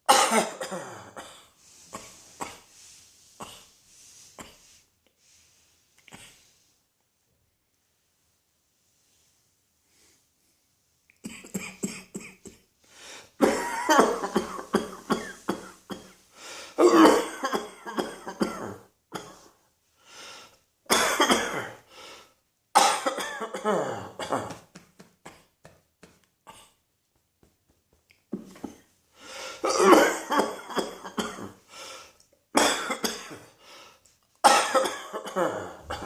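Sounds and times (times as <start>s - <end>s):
person coughing: 0.0s - 1.5s, 11.2s - 12.6s, 13.4s - 16.2s, 16.8s - 19.5s, 20.9s - 21.8s, 22.8s - 24.7s, 29.5s - 31.6s, 32.6s - 33.5s, 34.4s - 36.0s
short breaths: 12.8s - 13.4s, 16.3s - 16.8s, 20.0s - 20.6s, 29.1s - 29.6s, 31.7s - 32.2s, 33.6s - 34.2s.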